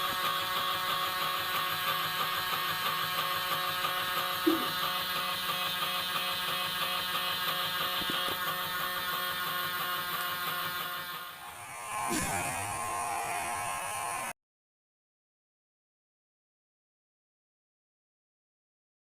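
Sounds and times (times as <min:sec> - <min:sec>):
small electric motor humming: 0:00.0 - 0:14.4.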